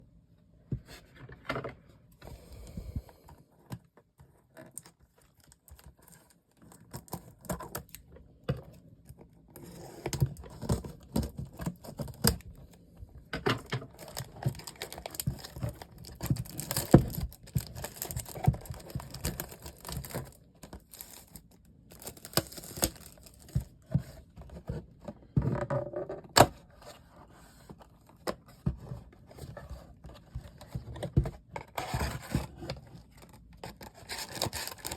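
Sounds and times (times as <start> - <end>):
packaging crinkling: 13.9 - 23.7, 33.8 - 34.9.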